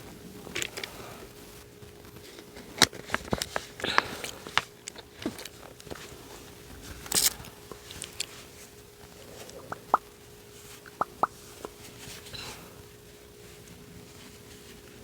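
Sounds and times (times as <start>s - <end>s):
faint steady hum: 0.0s - 15.0s
wet mouth clicks and lip smacks: 9.5s - 10.1s, 10.9s - 11.4s.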